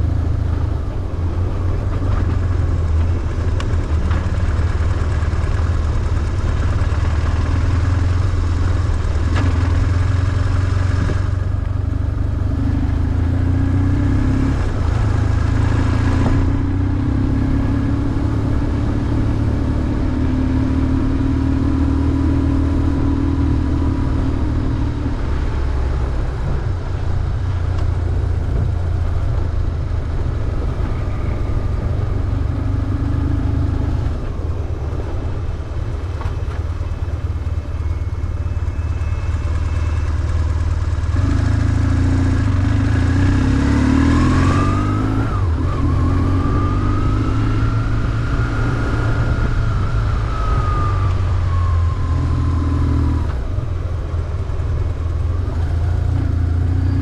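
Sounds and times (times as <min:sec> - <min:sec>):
motorcycle engine revving: 0:36.8 - 0:53.6.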